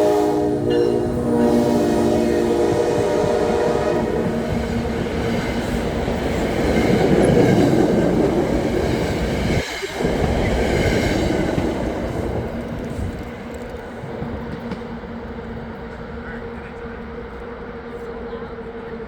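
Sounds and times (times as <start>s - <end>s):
train wheels clattering: 0.0s - 16.0s.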